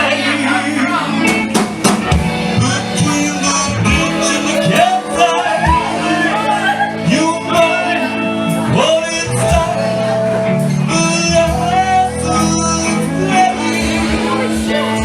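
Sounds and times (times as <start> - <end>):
live band playing: 0.0 - 15.0
steady bass line: 0.0 - 15.0.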